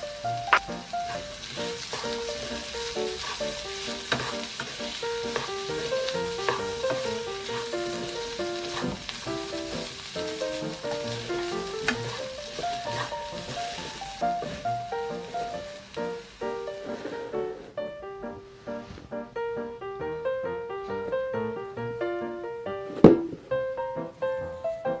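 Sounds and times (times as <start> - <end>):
oil sizzling in a pan: 0.0 - 17.7
background music: 0.0 - 25.0.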